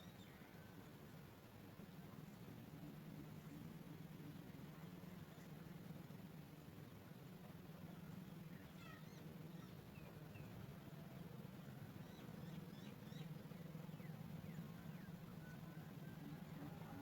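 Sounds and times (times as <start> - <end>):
steady low hum: 0.0 - 17.0
small birds chirping: 6.5 - 16.8.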